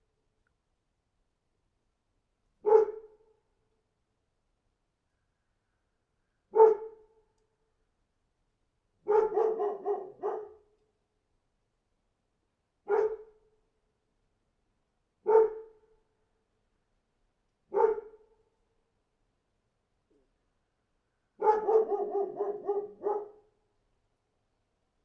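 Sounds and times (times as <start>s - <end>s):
dog barking: 2.6s - 3.2s, 6.5s - 7.0s, 9.0s - 10.7s, 12.9s - 13.3s, 15.2s - 15.8s, 17.7s - 18.2s, 21.4s - 23.5s.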